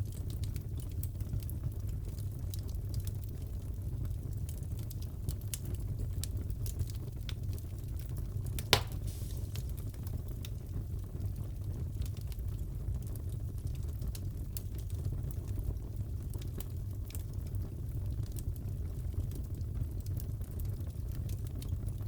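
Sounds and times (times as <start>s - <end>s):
wood fire rumbling: 0.0s - 22.0s
fire crackling: 0.1s - 21.7s
loud pop from fire: 8.6s - 10.0s.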